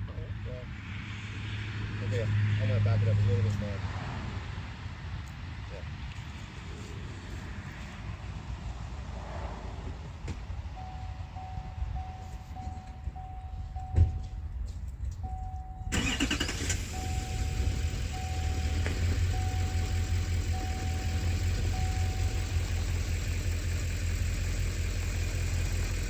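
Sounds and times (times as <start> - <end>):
vehicle warning chime beeping: 10.7 - 23.7
engine starting and idling: 15.9 - 26.0.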